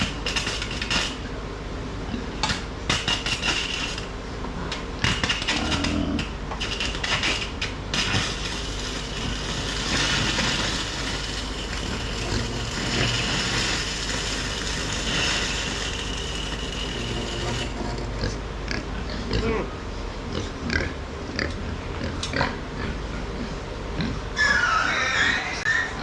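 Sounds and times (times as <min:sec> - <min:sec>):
welding arc sizzling: 0:00.0 - 0:18.7
steady low hum: 0:00.0 - 0:24.4.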